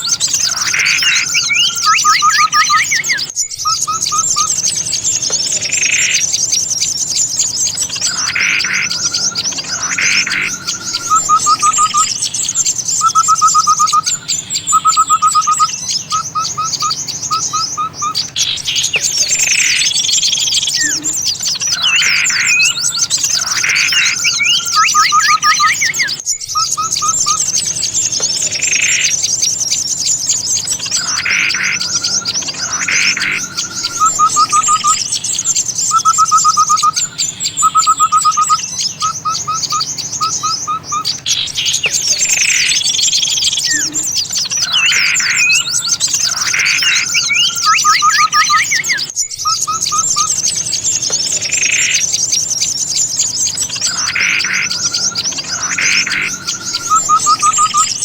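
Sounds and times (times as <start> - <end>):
lower repeated bird notes: 0.0 - 58.0
songbirds chirping rapidly: 0.0 - 58.0.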